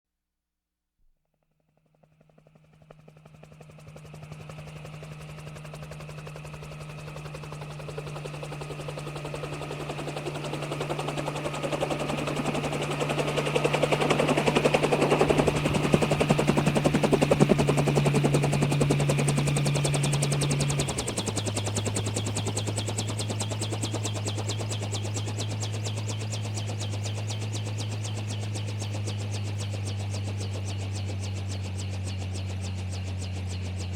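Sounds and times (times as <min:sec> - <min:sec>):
helicopter rotor chop: 0:02.0 - 0:33.9.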